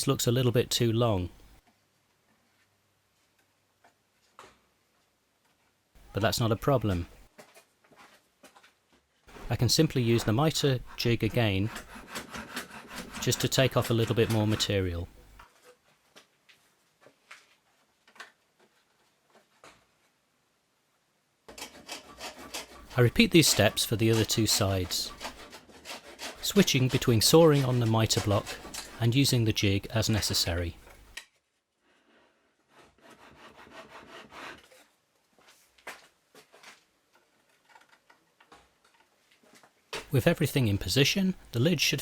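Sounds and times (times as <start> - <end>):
hand tool rasping wood: 9.3 - 15.4, 21.5 - 31.1, 32.7 - 34.8
wood scraping while trimmed: 9.3 - 15.4, 21.5 - 31.2, 32.6 - 34.9.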